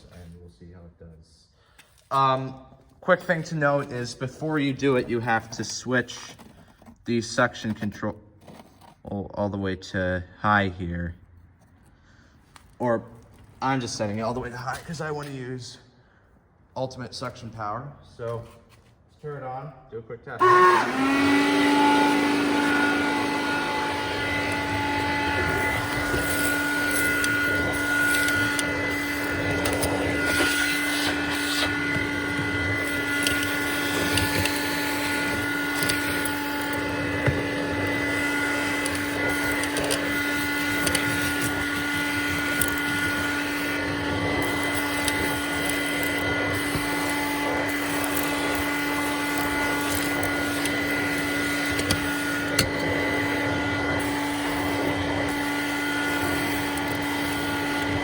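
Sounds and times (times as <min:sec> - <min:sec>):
vacuum cleaner running: 0:02.1 - 0:06.9, 0:20.4 - 0:58.0.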